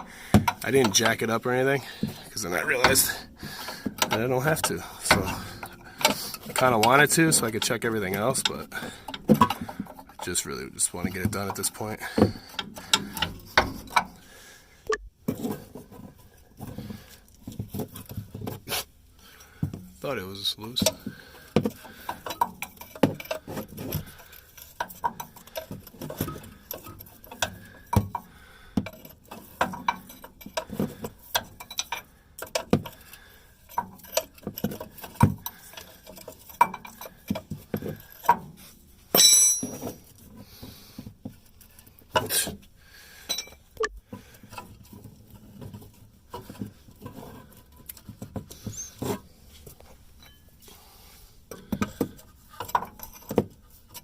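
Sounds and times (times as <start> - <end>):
wrench clinking on metal nut: 22.1 - 38.5, 39.1 - 40.0, 43.2 - 43.9.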